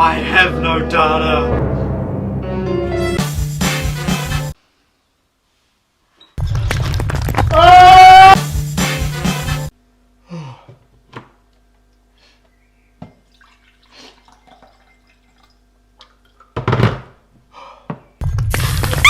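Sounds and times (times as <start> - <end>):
music: 0.0 - 4.6, 8.2 - 9.7
water dripping and splashing: 13.1 - 16.6.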